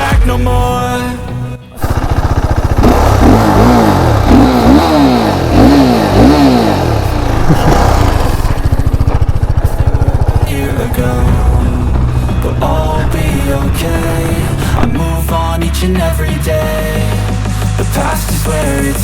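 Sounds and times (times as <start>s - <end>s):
motorcycle engine revving: 1.8s - 15.4s.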